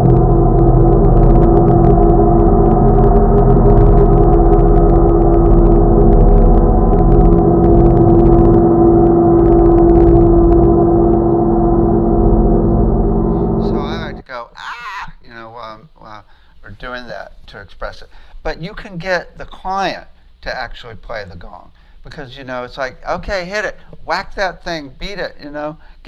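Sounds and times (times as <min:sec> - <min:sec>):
large gong ringing: 0:00.0 - 0:14.2.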